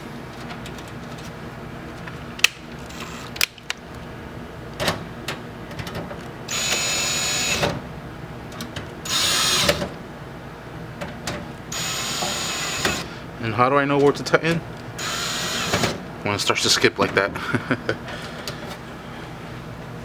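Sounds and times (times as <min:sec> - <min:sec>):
power drill driving screws into metal: 0:06.5 - 0:07.8, 0:09.0 - 0:09.9, 0:11.7 - 0:13.1, 0:15.0 - 0:16.0.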